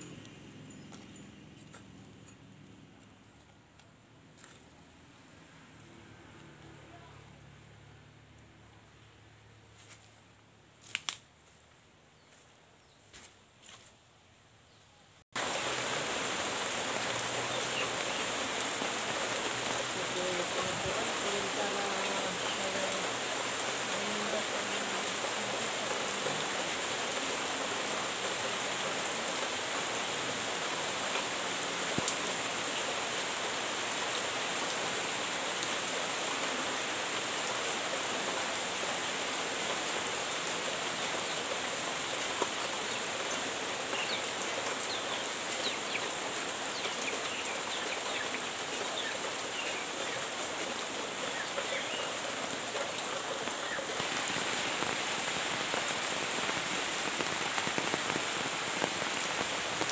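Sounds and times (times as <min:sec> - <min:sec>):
heavy rain falling: 0:15.3 - 0:59.9.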